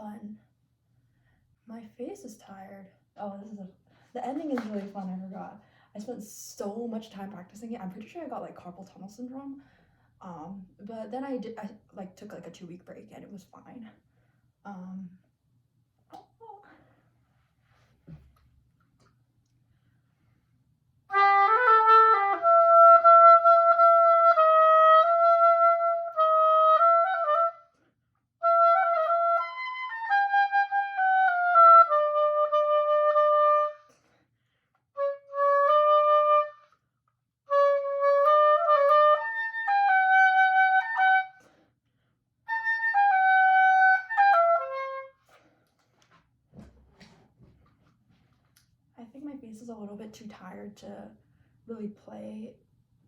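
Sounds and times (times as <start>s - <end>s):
solo oboe melody: 21.1s - 27.8s, 28.4s - 33.9s, 35.0s - 36.8s, 37.5s - 41.4s, 42.5s - 45.4s.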